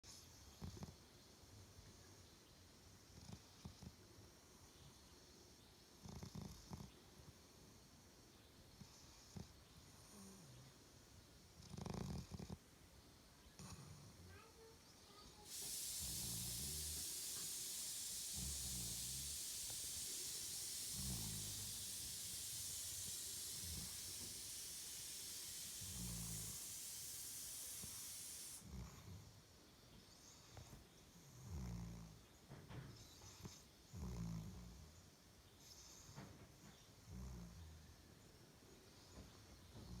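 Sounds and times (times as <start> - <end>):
puppy snoring: 0.5 - 1.1, 3.1 - 4.1, 6.0 - 7.3, 8.8 - 10.8, 11.4 - 12.7, 13.5 - 14.6, 15.3 - 29.4, 30.3 - 32.3, 32.9 - 35.0, 35.6 - 37.9
steady high hiss: 12.7 - 31.3.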